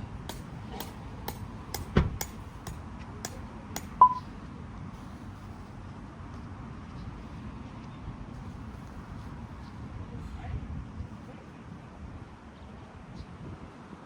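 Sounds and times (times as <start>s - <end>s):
short loud electronic beep: 4.0s - 4.2s.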